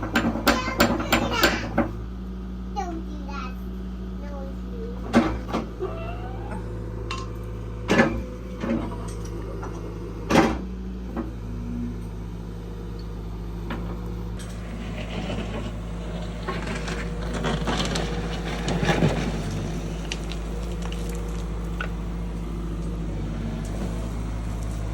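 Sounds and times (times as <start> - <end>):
excavator diesel engine running: 0.0 - 24.9
rough crackling noise: 14.6 - 22.1.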